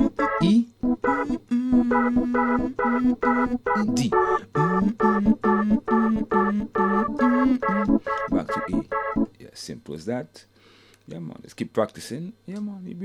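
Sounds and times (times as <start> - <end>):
organ keyboard reggae chords: 0.0 - 9.3.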